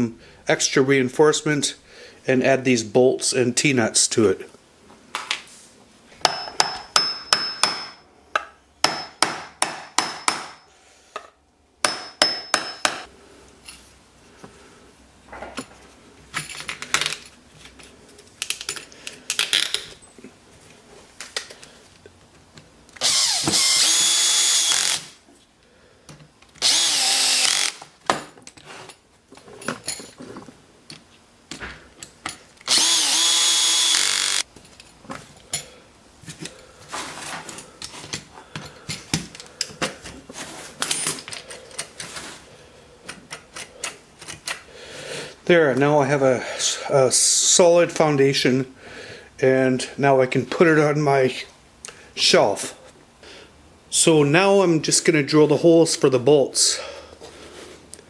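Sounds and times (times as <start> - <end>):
power drill whining: 23.0 - 25.2, 26.6 - 27.8, 32.6 - 34.5.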